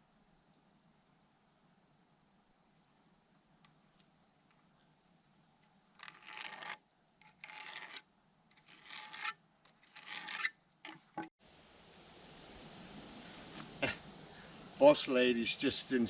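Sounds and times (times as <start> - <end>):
hand tool rasping on wood: 6.0 - 8.0, 8.6 - 10.5.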